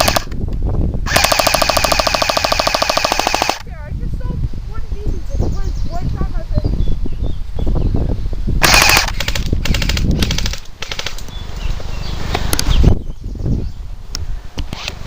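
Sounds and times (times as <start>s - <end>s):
airsoft gun full-auto bursts: 0.0s - 0.3s, 1.1s - 3.6s, 8.6s - 11.2s.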